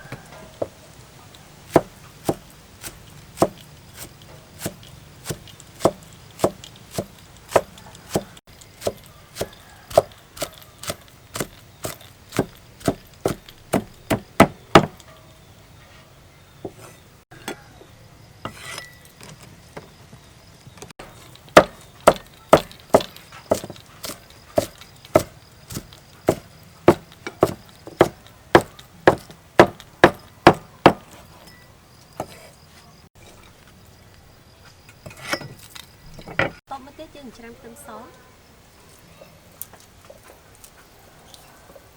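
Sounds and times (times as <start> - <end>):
knife chopping on wooden board: 1.7 - 15.0, 21.6 - 31.2.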